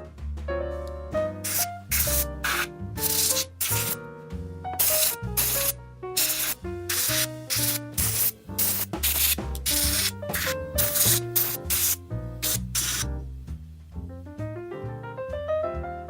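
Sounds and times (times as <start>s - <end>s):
bass line: 0.0s - 16.0s
piano: 0.0s - 16.0s
scratchy brushing strokes: 1.5s - 4.0s, 4.8s - 13.0s.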